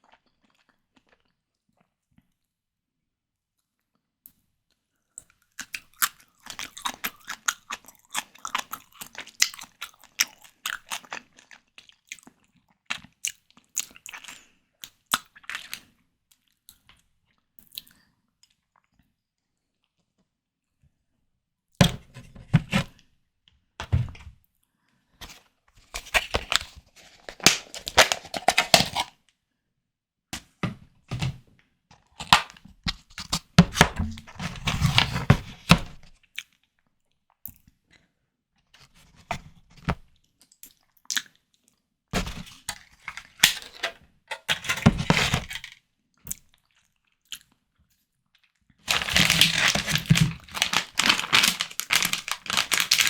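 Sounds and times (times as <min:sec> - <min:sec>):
wet crackly chewing: 0:05.2 - 0:15.8, 0:48.4 - 0:53.0.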